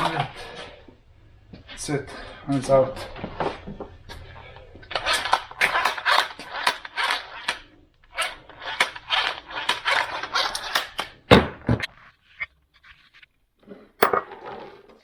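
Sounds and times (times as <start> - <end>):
tools clattering and clicking: 4.9 - 7.2, 8.2 - 11.1, 13.6 - 15.0.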